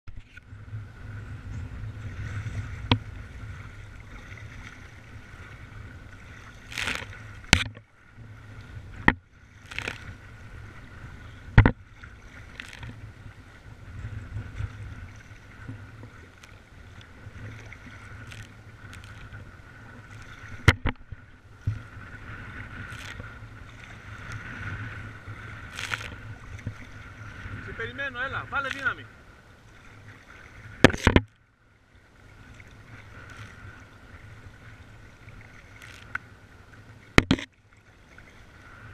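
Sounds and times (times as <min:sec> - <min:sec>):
wind rumble on microphone: 0:00.1 - 0:31.3
water splashing against boat: 0:00.1 - 0:38.9
sharp knocks: 0:20.6 - 0:21.0, 0:30.8 - 0:31.3, 0:37.2 - 0:37.5.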